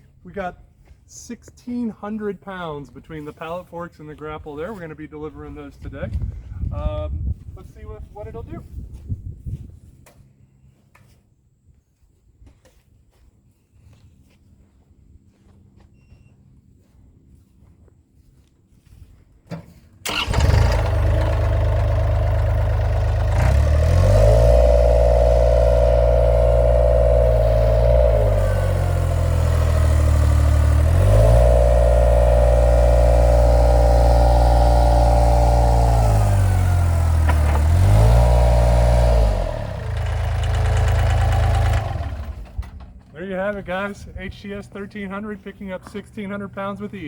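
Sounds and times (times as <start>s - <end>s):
track loader engine running: 20.0s - 46.9s.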